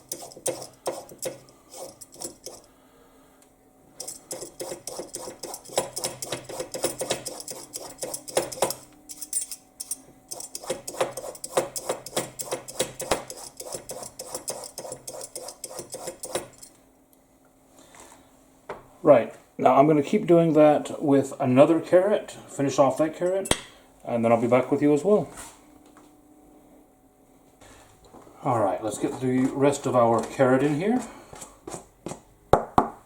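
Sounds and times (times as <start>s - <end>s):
peeler scraping a carrot: 0.0s - 2.7s, 4.0s - 8.8s, 10.3s - 16.6s.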